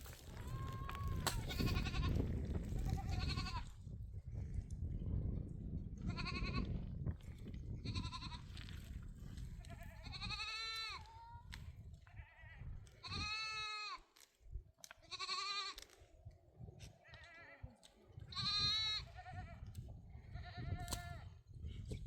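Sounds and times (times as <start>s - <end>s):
goats bleating: 0.4s - 2.2s, 2.8s - 3.7s, 15.0s - 15.8s, 17.0s - 19.7s.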